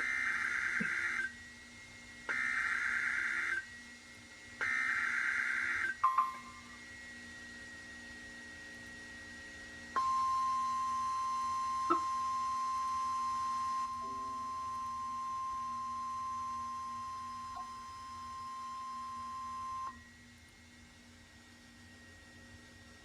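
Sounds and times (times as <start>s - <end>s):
steady warning alarm tone: 0.0s - 1.4s, 2.3s - 3.8s, 4.6s - 6.8s, 9.9s - 20.1s.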